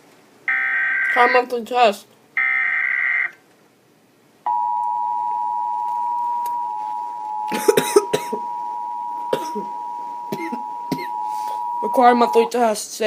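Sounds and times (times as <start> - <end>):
two-tone attention signal: 4.5 - 12.5
person speaking: 6.7 - 13.0.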